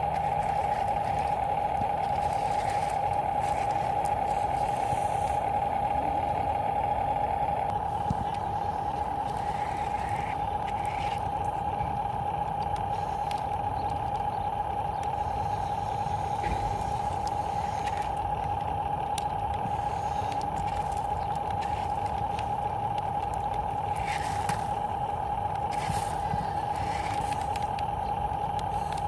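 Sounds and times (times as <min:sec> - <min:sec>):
high electric motor whine: 0:00.0 - 0:29.0
low rumble: 0:00.0 - 0:29.0
faint clicks: 0:07.6 - 0:29.0.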